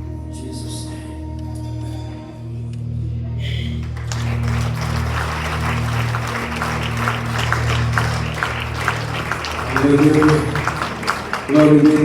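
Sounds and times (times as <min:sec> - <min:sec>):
sustained organ chords: 0:03.4 - 0:12.0
congregation applauding: 0:03.8 - 0:12.0.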